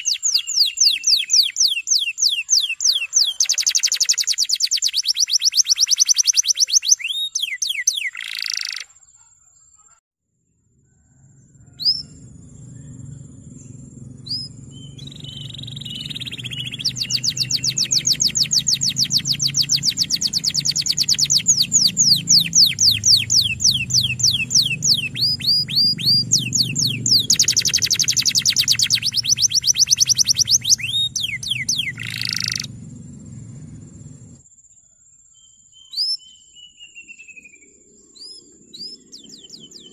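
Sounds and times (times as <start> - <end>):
canary singing: 0.0 - 9.0, 11.2 - 34.4
low steady hum: 10.8 - 34.4.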